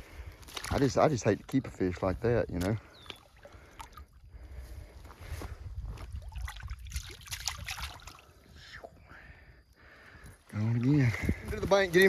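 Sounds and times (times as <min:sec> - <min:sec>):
water splashing and trickling: 0:00.0 - 0:04.5, 0:05.8 - 0:09.0, 0:10.4 - 0:12.0.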